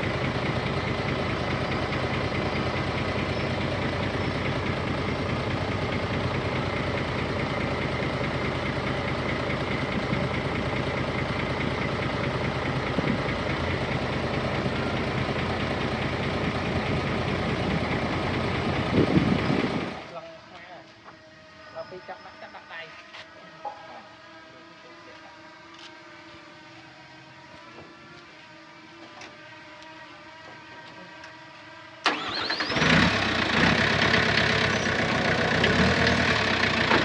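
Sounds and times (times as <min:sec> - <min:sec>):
heavy machinery diesel engine running: 0:00.0 - 0:20.5, 0:32.0 - 0:37.0.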